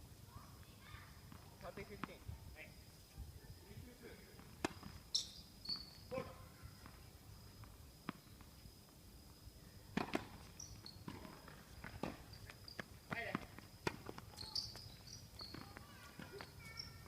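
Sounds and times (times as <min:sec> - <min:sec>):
short high squeaks: 0:05.1 - 0:06.2, 0:10.5 - 0:11.2, 0:14.3 - 0:17.0
tennis ball knocks: 0:09.9 - 0:10.4.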